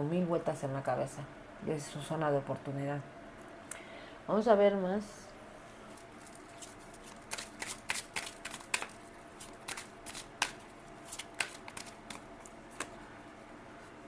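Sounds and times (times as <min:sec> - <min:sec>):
cards clicking and snapping: 0:06.5 - 0:13.0.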